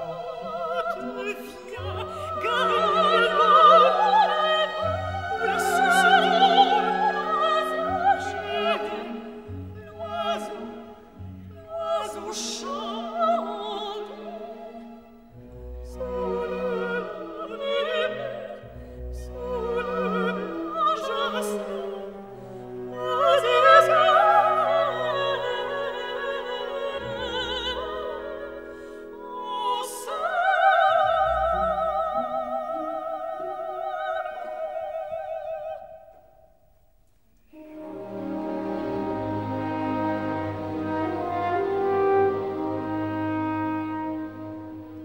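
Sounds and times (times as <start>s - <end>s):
operatic singing with vibrato: 0.0s - 36.3s, 37.5s - 45.0s
orchestral accompaniment: 37.6s - 45.0s.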